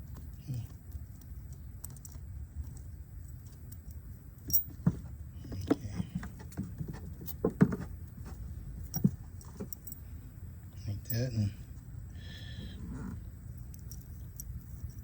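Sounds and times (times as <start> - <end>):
small metal parts clinking: 0.0 - 6.4, 8.8 - 10.1, 13.6 - 15.0.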